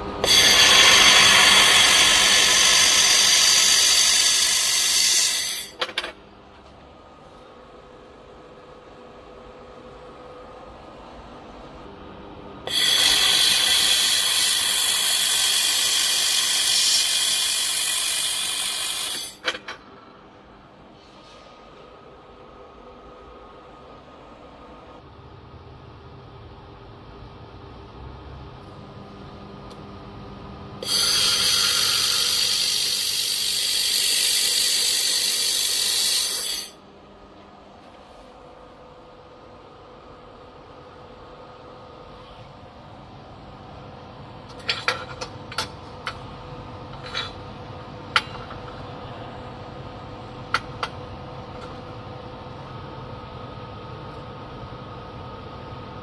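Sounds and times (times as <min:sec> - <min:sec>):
laser welder hissing: 0:00.2 - 0:05.8, 0:12.7 - 0:19.4, 0:30.8 - 0:36.8.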